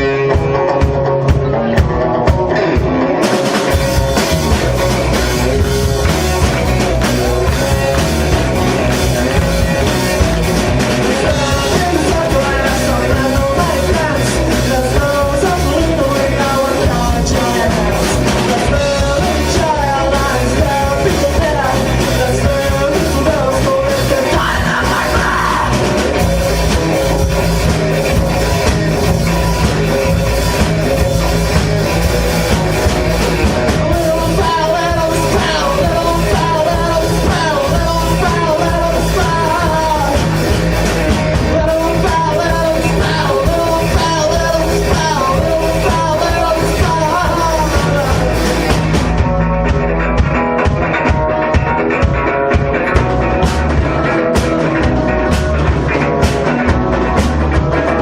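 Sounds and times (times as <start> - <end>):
person singing: 0.0 - 26.8, 33.6 - 49.8
loud rock music: 0.0 - 58.0.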